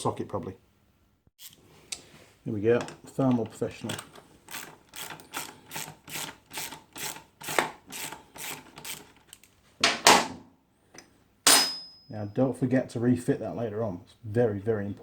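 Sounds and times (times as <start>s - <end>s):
socket ratchet clicking: 3.9s - 9.5s.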